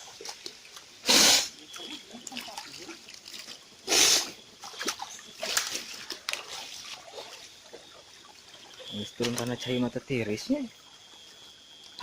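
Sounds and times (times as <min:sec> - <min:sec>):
short sharp splashes: 0:00.0 - 0:07.8
water splashing and sloshing: 0:00.0 - 0:12.0.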